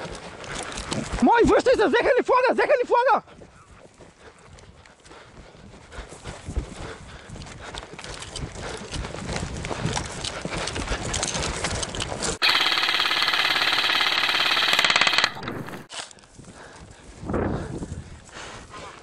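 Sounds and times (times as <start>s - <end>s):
hurried footsteps: 3.3s - 12.4s
gear movement: 11.1s - 15.9s
electric rifle full-auto burst: 12.4s - 15.9s.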